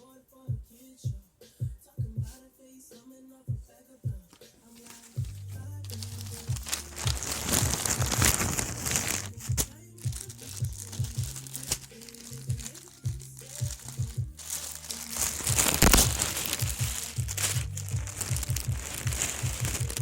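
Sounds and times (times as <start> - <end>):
background music with deep bass: 0.0 - 20.0
packaging crinkling: 4.6 - 20.0.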